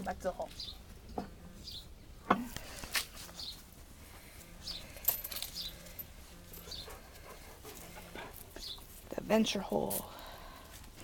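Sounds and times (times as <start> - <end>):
small bird chirping: 0.5 - 0.9, 4.6 - 6.0, 6.6 - 7.0.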